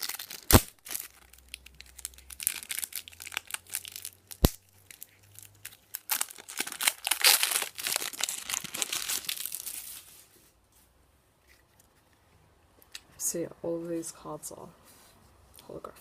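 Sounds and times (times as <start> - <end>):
plastic packaging crinkling: 0.0 - 10.3.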